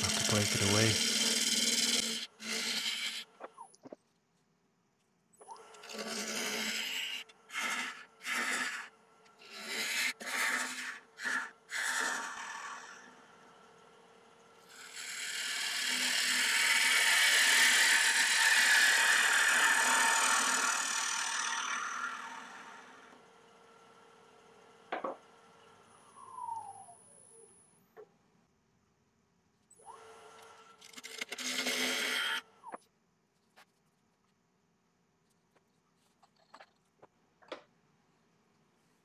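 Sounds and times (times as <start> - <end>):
lathe humming: 0.0 - 2.2, 11.8 - 24.7
gouge cutting wood on a lathe: 0.0 - 3.3, 5.7 - 13.4, 14.7 - 24.8, 29.9 - 32.5.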